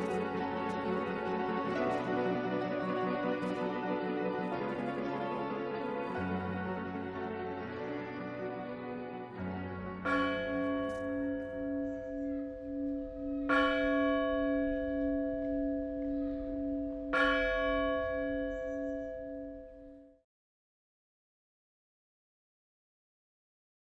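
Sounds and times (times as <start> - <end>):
large church bell tolling: 0.0 - 20.1.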